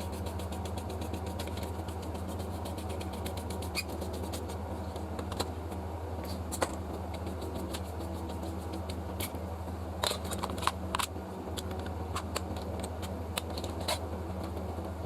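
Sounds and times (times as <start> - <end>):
small rapid clicks: 0.0 - 4.6
low electrical hum: 0.0 - 15.0.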